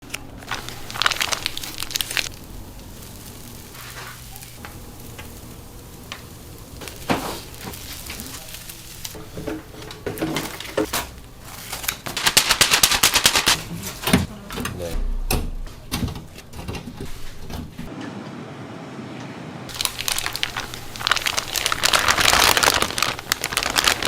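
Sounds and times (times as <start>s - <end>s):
steady low hum: 0.1s - 9.9s
batter sizzling: 0.2s - 13.7s, 19.7s - 24.0s.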